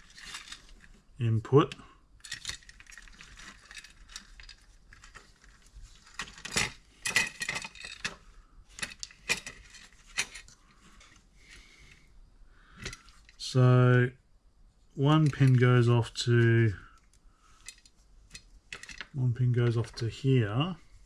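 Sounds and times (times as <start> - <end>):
metallic clicks of parts handled: 0.0 - 1.0, 1.7 - 11.2, 12.8 - 13.4, 17.0 - 20.0.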